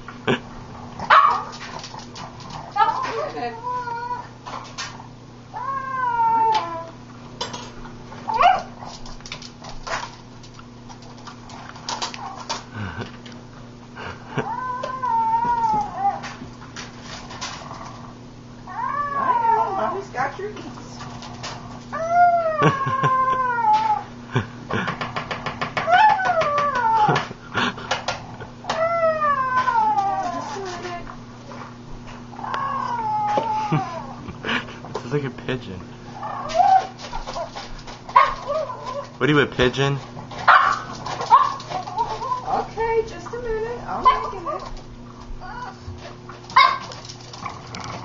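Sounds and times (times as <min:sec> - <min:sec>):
dog whining: 0:02.6 - 0:04.5, 0:05.5 - 0:07.0, 0:08.2 - 0:08.9, 0:14.3 - 0:16.4, 0:18.6 - 0:24.1, 0:25.8 - 0:27.3, 0:28.6 - 0:31.1, 0:32.3 - 0:34.3, 0:36.1 - 0:39.2, 0:40.5 - 0:48.0
dog squealing: 0:18.7 - 0:20.3, 0:36.2 - 0:37.5, 0:38.2 - 0:39.2, 0:40.5 - 0:42.8.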